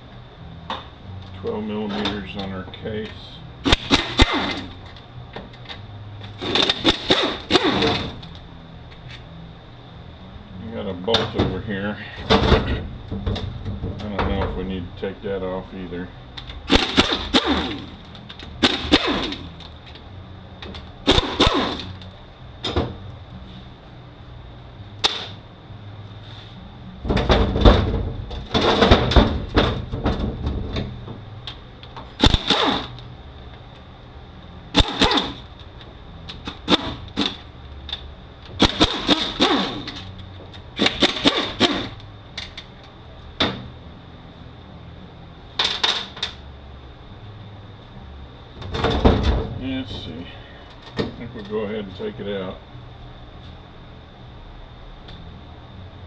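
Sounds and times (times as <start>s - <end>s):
rattling clatter of metal parts: 27.0s - 31.2s, 45.6s - 46.4s.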